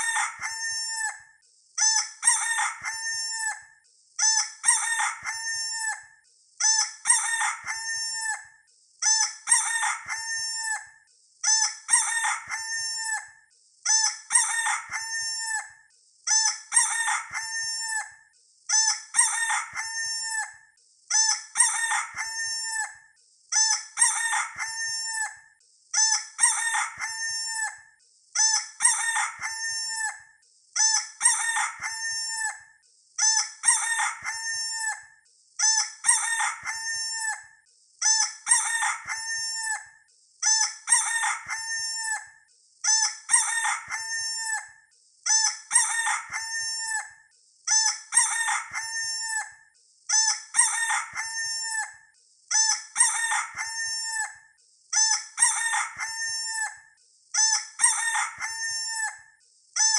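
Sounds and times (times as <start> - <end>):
rooster crowing: 0.0 - 1.2, 2.3 - 3.6, 4.7 - 6.0, 7.2 - 8.4, 9.5 - 10.8, 11.9 - 13.3, 14.4 - 15.7, 16.8 - 18.1, 19.2 - 20.6, 21.6 - 23.0, 24.0 - 25.4, 26.4 - 27.8, 28.8 - 30.2, 31.3 - 32.6, 33.7 - 35.0, 36.2 - 37.4, 38.5 - 39.8, 40.9 - 42.3, 43.4 - 44.7, 45.7 - 47.1, 48.1 - 49.6, 53.0 - 54.3, 55.5 - 56.8.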